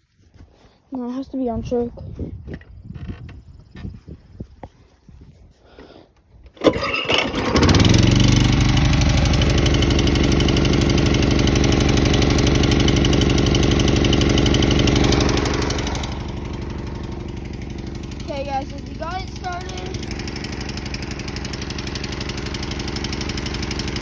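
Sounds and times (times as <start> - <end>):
lawnmower engine starting and running: 5.7 - 24.0.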